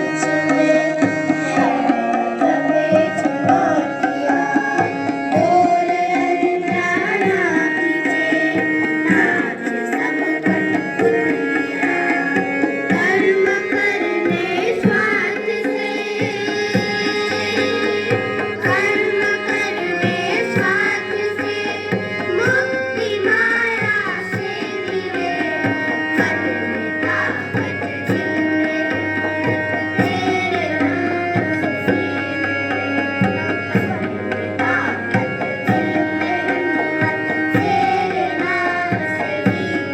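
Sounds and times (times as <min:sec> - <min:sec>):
tabla rhythm: 0:00.0 - 0:39.9.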